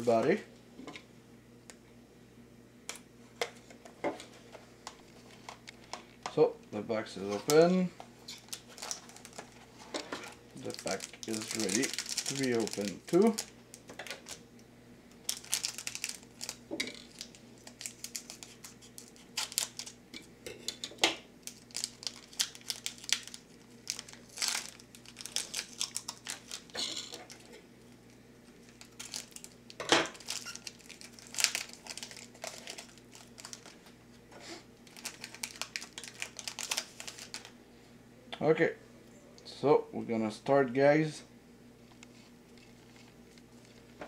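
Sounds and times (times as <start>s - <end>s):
wrapper tearing and crinkling: 7.3s - 14.4s, 15.2s - 20.0s, 21.4s - 27.6s, 28.6s - 33.9s, 34.8s - 37.5s.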